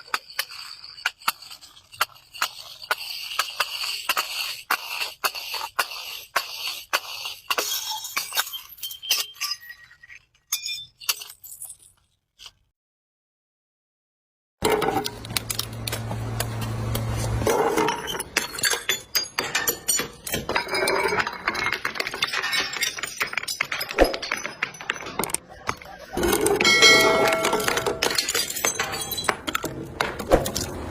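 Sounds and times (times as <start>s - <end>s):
glass bottles breaking: 7.5s - 12.1s, 17.5s - 30.7s.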